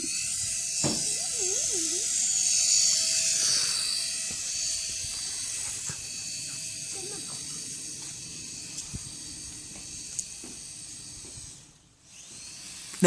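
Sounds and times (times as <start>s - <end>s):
brief wavering warble: 0.0s - 9.4s
toy helicopter motor whirring: 0.0s - 13.0s.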